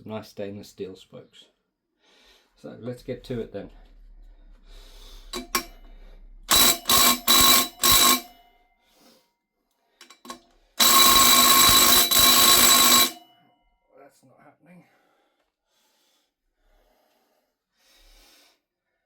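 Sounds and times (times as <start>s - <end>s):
impact wrench hammering: 5.3s - 5.9s, 6.5s - 8.4s.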